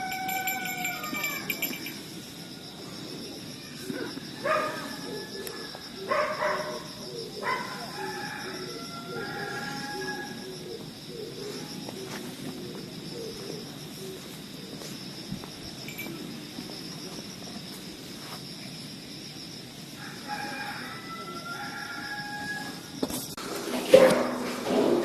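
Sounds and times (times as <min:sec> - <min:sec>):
rooster crowing: 0:00.0 - 0:02.9, 0:07.4 - 0:10.6, 0:20.0 - 0:23.0.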